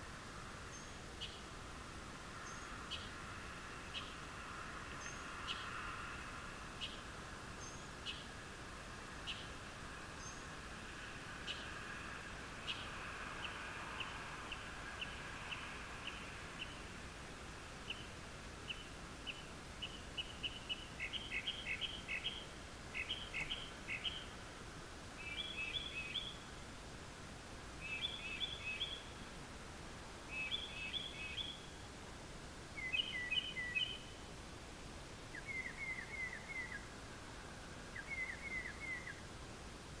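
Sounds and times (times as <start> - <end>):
birds chirping: 9.2 - 9.6, 12.6 - 16.9, 17.8 - 24.4, 25.2 - 26.5, 27.8 - 29.2, 30.2 - 31.8, 32.8 - 34.2, 35.3 - 36.9, 37.9 - 39.2.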